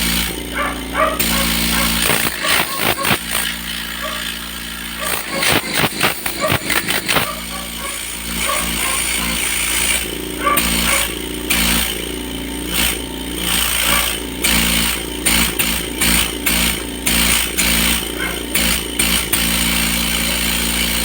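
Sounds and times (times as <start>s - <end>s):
air compressor motor hum: 0.0s - 21.0s.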